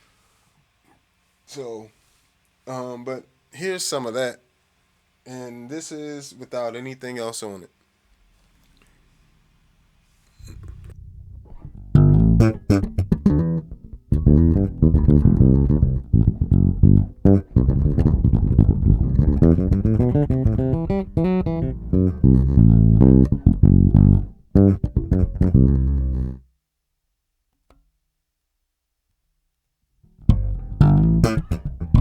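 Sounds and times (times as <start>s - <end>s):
electric bass guitar riff: 10.4s - 26.4s, 30.1s - 32.0s.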